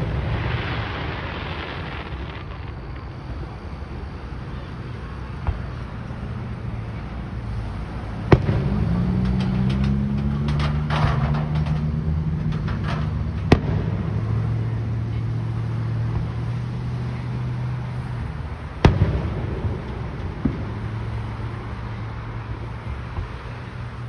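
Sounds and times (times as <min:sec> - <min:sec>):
crackling pops: 0:00.0 - 0:06.6, 0:07.4 - 0:14.6
fireworks bangs: 0:00.0 - 0:24.0
low engine hum: 0:00.0 - 0:24.0.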